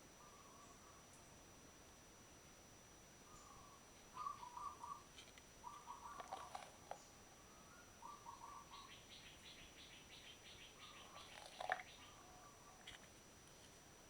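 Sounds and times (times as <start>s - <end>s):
faint high whine: 0.0s - 14.0s
birds chirping: 3.3s - 12.8s.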